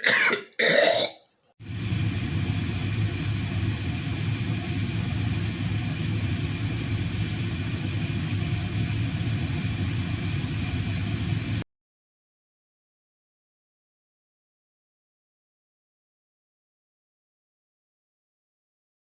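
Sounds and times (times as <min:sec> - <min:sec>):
low mechanical hum: 0:01.6 - 0:11.6.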